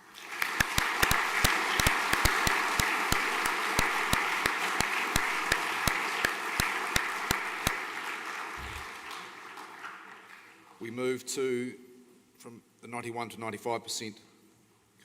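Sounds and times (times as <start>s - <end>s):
audience applause: 0.0s - 10.6s.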